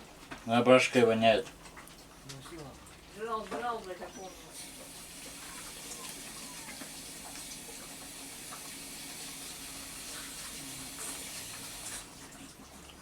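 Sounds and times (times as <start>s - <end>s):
water running: 0.0s - 13.0s.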